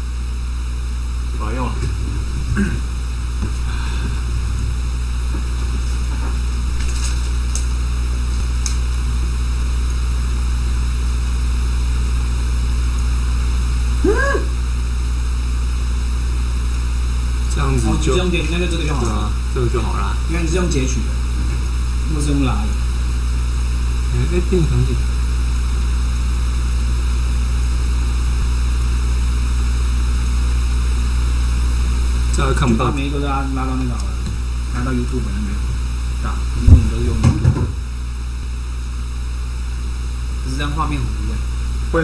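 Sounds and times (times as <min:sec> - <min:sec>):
loud electrical hum and buzz: 0:00.0 - 0:42.0.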